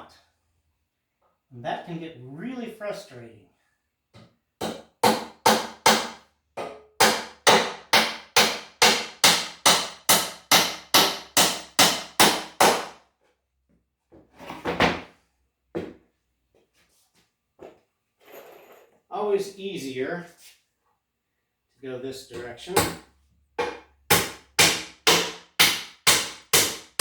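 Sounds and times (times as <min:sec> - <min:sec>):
hammer hitting nail into wood: 0:04.6 - 0:13.0, 0:22.8 - 0:23.0, 0:23.6 - 0:27.0.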